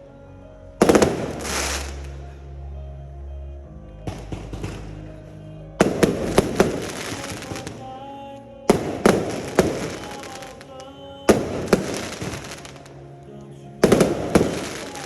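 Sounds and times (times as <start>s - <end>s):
fireworks bangs: 0.8s - 2.0s, 4.1s - 5.0s, 5.8s - 7.8s, 8.7s - 10.6s, 11.3s - 12.9s, 13.8s - 15.0s
fireworks crackling: 0.8s - 2.2s, 4.1s - 5.2s, 5.8s - 7.9s, 8.7s - 13.0s, 13.8s - 15.0s.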